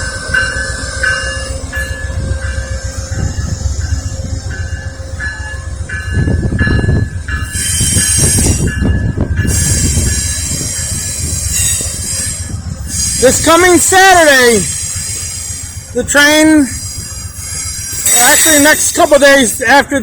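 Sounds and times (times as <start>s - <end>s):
train rumbling: 0.0s - 20.0s
high-pitched wheel squeal: 9.5s - 15.8s, 16.4s - 19.4s.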